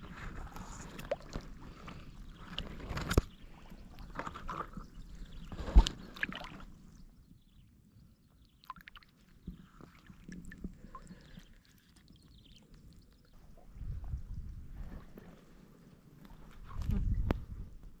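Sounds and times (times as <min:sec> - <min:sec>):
water sloshing and splashing: 0:00.0 - 0:07.1, 0:08.6 - 0:15.4.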